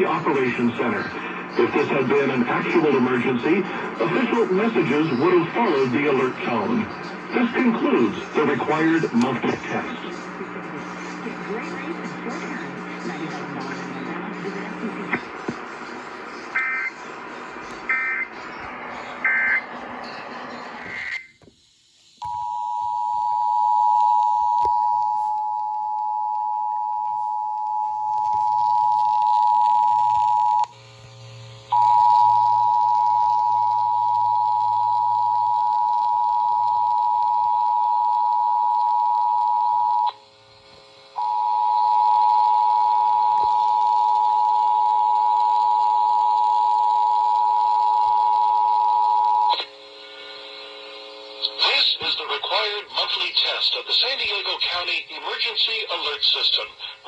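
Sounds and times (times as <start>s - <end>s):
digital data tone bursts: 17.9s - 18.4s, 19.2s - 19.7s.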